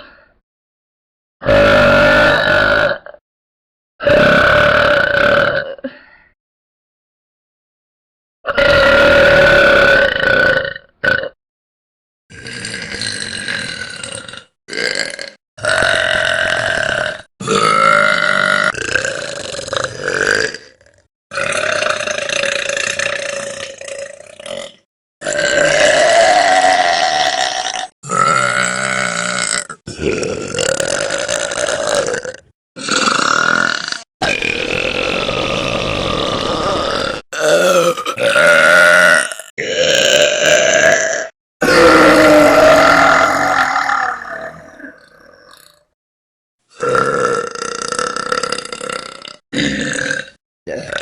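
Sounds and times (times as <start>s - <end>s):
girls and women belching: 12.4s - 23.8s, 25.2s - 46.0s, 46.8s - 51.0s.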